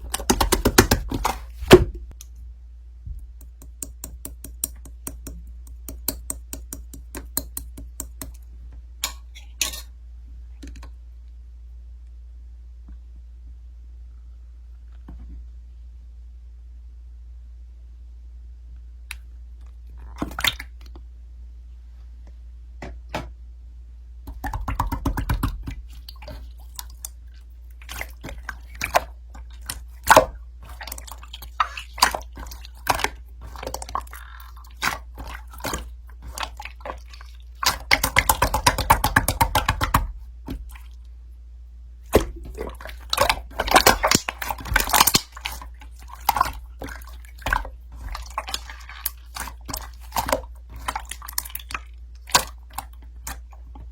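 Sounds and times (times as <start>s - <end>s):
small sharp clicks and taps: 3.2s - 8.4s.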